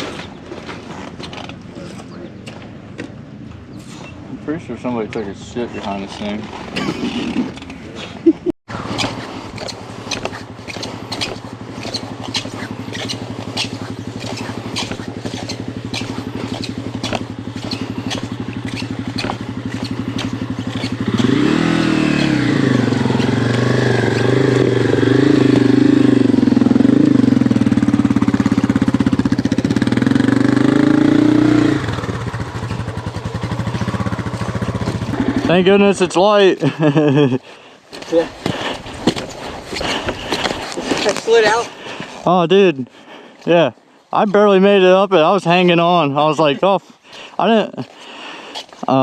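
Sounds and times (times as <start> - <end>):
dirt bike engine idling and revving: 8.7 - 46.6.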